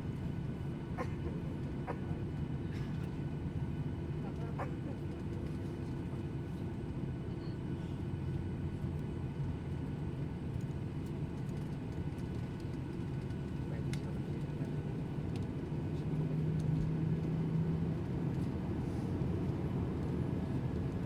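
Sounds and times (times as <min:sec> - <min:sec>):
airliner cabin engine rumble: 0:00.0 - 0:21.0.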